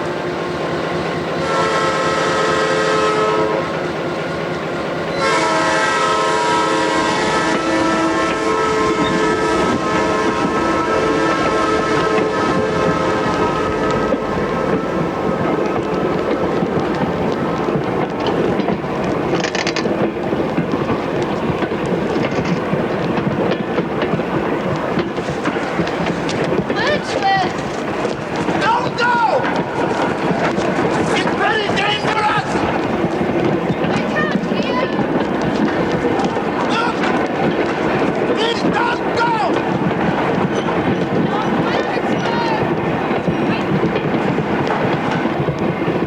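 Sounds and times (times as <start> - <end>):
train rumbling on rails: 0.0 - 46.0
multi-tone train horn: 1.3 - 4.0, 5.1 - 16.7.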